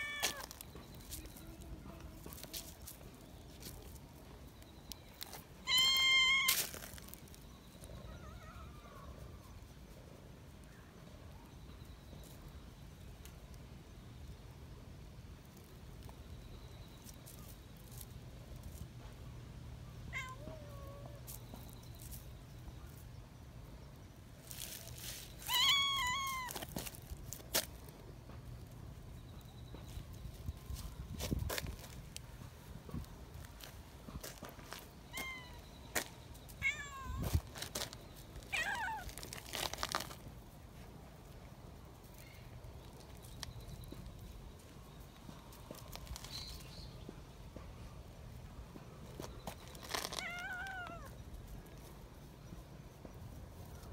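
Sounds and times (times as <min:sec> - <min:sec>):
kitten meowing: 0:05.6 - 0:06.6, 0:25.5 - 0:26.6, 0:50.2 - 0:51.1.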